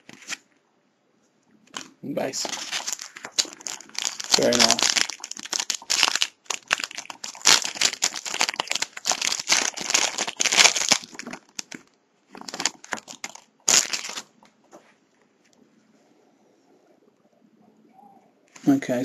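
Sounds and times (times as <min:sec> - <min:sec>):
foil wrapper crinkling: 0:01.8 - 0:14.4.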